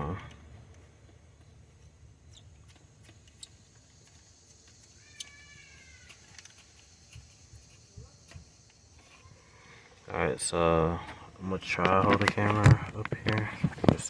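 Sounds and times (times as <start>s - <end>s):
animal call: 4.9s - 6.3s.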